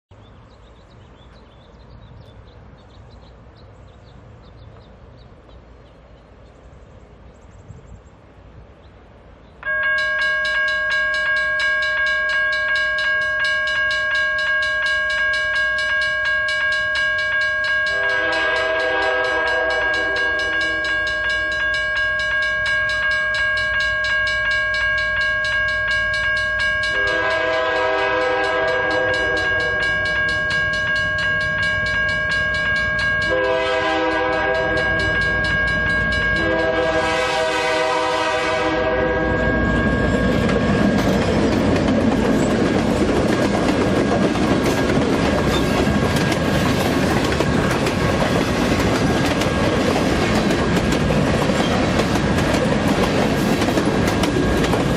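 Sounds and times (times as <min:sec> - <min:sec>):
locomotive horn blasts: 0:09.6 - 0:40.9
railroad crossing bell ringing: 0:09.6 - 0:54.9.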